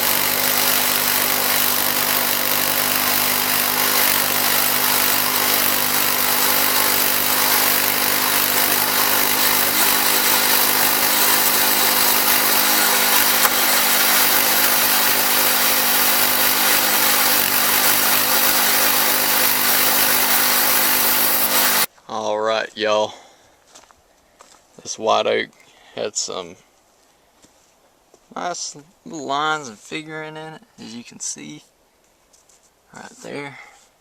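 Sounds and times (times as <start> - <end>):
band saw blade cutting log: 0.0 - 21.9
sawmill engine humming: 0.0 - 21.9.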